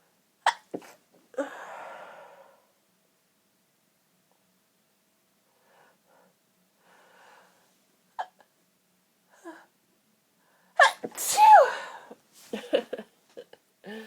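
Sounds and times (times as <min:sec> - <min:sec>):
woman sneezing: 0:10.8 - 0:12.1.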